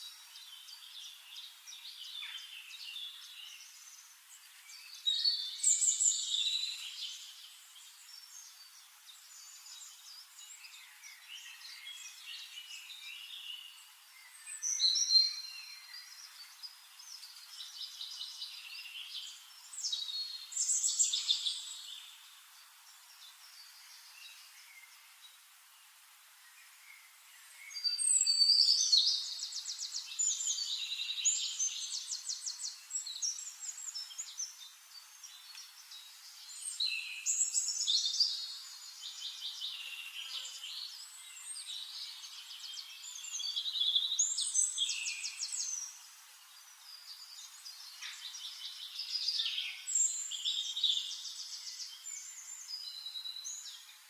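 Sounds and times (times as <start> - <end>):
songbirds singing: 0.0 - 54.0.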